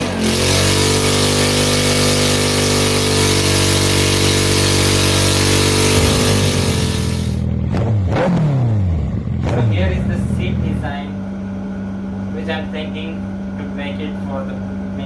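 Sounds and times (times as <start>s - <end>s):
motorcycle engine revving high: 0.0s - 12.3s
loud hiss: 1.4s - 7.4s.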